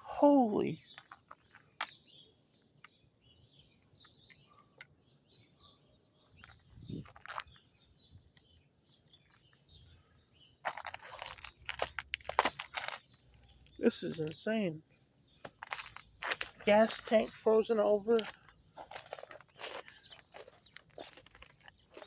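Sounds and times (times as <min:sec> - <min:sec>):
faint bird chirps: 0:00.0 - 0:10.6.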